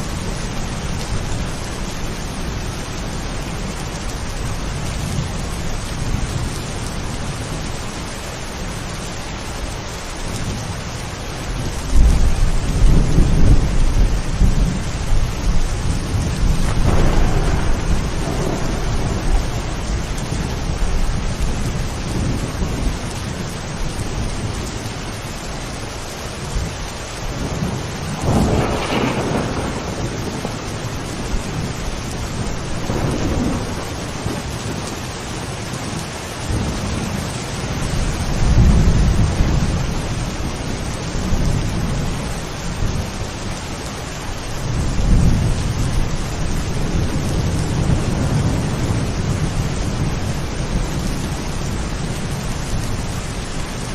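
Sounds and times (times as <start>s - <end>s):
heavy rain: 0.0s - 53.9s
thunder rumbling: 11.4s - 25.1s, 26.4s - 43.6s, 44.4s - 53.9s.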